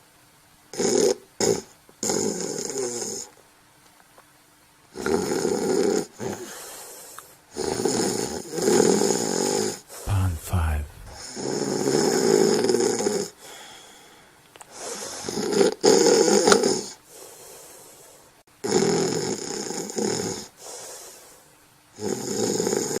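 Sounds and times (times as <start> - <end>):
quiet breathing: 10.1 - 11.2, 13.4 - 15.3.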